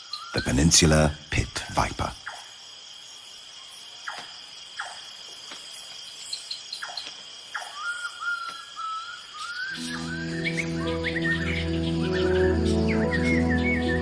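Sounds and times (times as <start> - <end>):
crickets trilling: 0.0 - 14.0
downward sweeping insect calls: 0.0 - 14.0
soft wavering musical line: 9.7 - 14.0.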